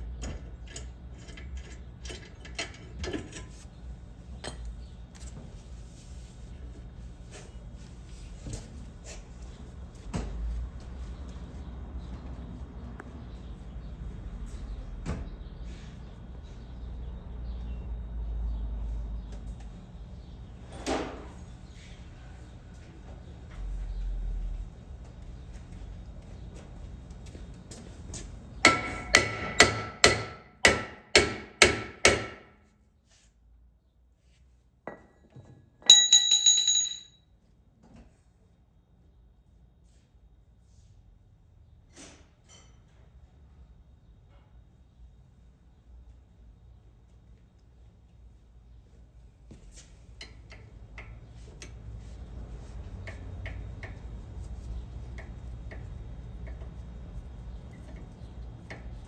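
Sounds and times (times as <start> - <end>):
hammer striking metal: 28.7 - 32.5, 35.9 - 37.2
high metallic ring: 35.9 - 37.2.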